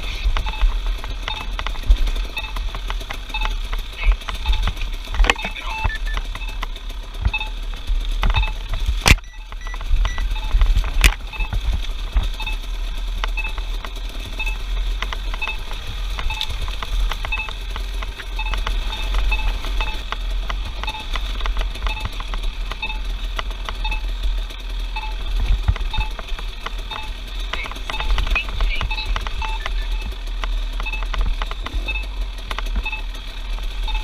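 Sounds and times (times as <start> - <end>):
clicks and rattles: 0.0 - 12.6
steady low rumble: 0.0 - 34.0
short electronic beeps: 0.1 - 6.6, 7.3 - 7.6, 8.4 - 11.6, 12.3 - 12.7, 13.3 - 14.7, 15.3 - 16.6, 17.3 - 17.7, 18.3 - 20.1, 20.8 - 21.1, 21.8 - 22.2, 22.8 - 23.1, 23.8 - 24.1, 24.9 - 25.3, 26.9 - 31.2, 31.8 - 32.2, 32.8 - 33.2, 33.8 - 34.0.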